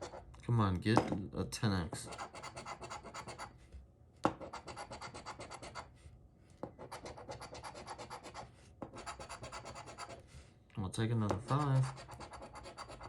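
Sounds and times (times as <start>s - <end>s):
scratching lottery ticket: 6.9s - 10.2s, 11.4s - 13.0s.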